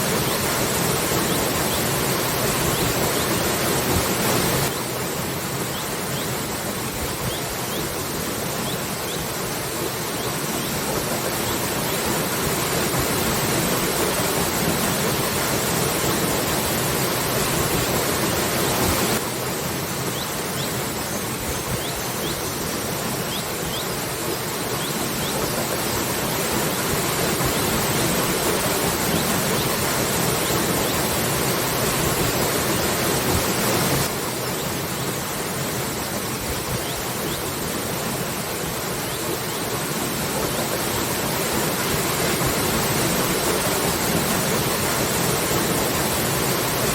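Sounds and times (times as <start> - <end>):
waterfall rushing: 0.0 - 46.9.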